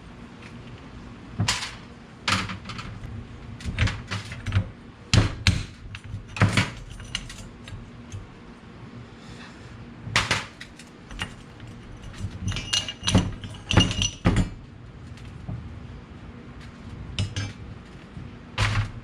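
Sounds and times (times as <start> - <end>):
metal tools clanking: 11.1 - 14.6.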